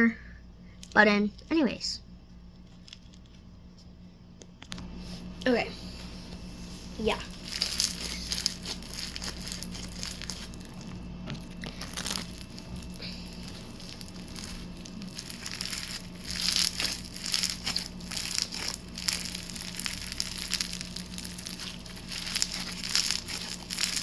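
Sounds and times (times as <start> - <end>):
slime squished by hand: 7.2 - 24.0.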